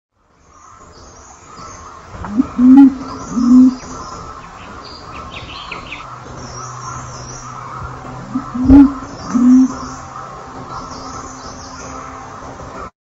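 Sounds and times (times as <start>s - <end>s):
outdoor background noise: 0.1s - 12.9s
pigeon cooing: 2.2s - 4.0s, 8.3s - 9.9s.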